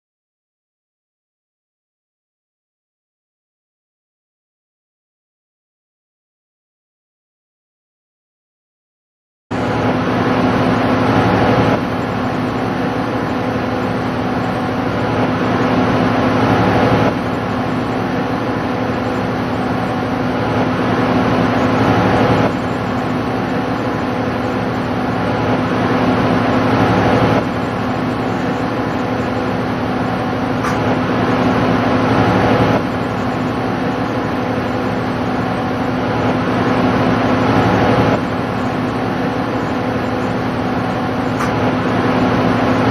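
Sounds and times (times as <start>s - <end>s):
steady machine hum: 9.5s - 42.9s.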